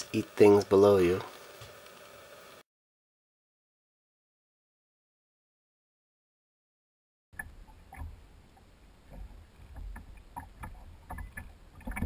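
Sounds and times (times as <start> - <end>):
faint clicks and ticks: 7.4 - 12.0.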